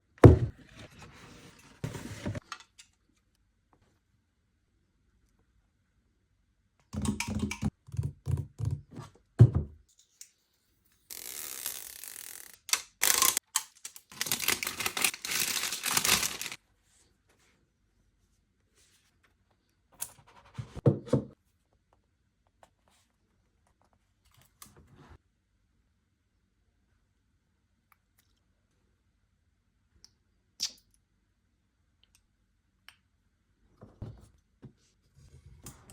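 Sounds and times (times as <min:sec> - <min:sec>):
wrapping tearing and crinkling: 0:12.9 - 0:16.6.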